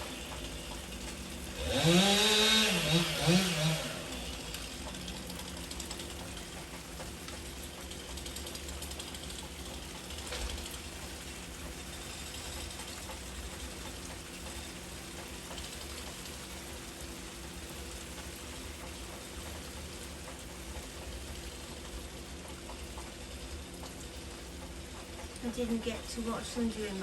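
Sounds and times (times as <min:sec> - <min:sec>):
heavy rain: 0:00.0 - 0:27.0.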